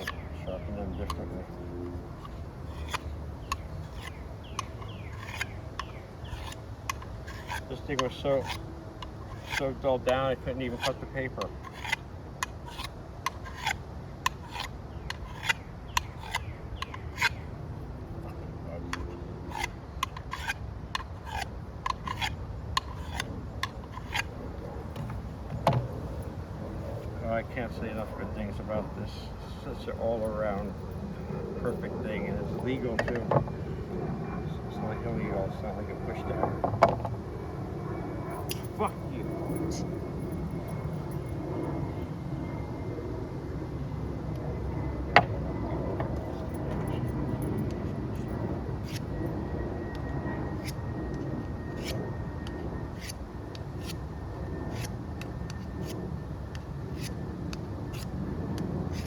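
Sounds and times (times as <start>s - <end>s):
knife blade scraping: 0.0s - 17.5s, 18.2s - 27.2s, 38.3s - 39.9s, 47.8s - 49.2s, 51.6s - 58.1s.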